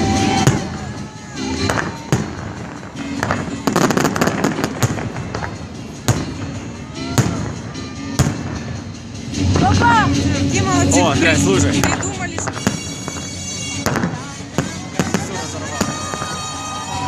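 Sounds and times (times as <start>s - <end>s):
fireworks crackling: 0.0s - 17.0s
fireworks shells bursting: 1.6s - 8.8s.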